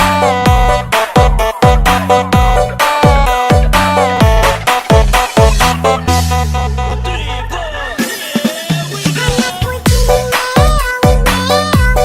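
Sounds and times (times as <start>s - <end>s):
electronic dance music: 0.0s - 12.0s.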